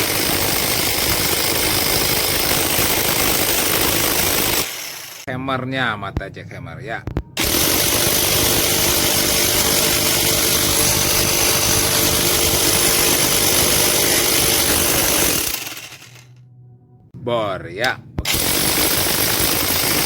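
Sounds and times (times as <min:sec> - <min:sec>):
jackhammer hammering: 0:00.0 - 0:05.3, 0:07.4 - 0:16.3, 0:18.2 - 0:20.0.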